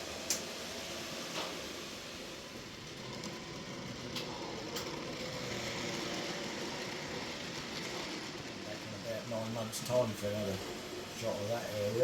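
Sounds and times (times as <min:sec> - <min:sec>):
model train motor whirring: 0:00.1 - 0:12.0.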